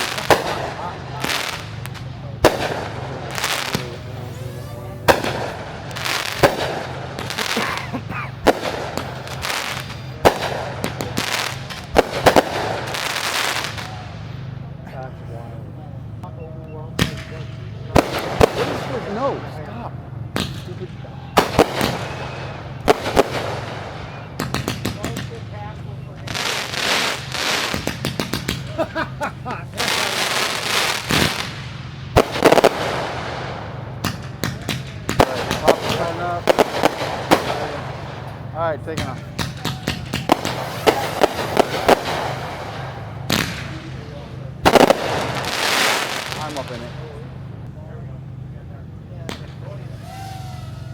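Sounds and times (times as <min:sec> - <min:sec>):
low hum: 0:00.0 - 0:12.9
firework shells bursting: 0:00.0 - 0:14.3, 0:21.4 - 0:25.4, 0:26.2 - 0:28.8, 0:29.7 - 0:46.9
fireworks crackling and hissing: 0:00.0 - 0:16.2, 0:17.0 - 0:50.9.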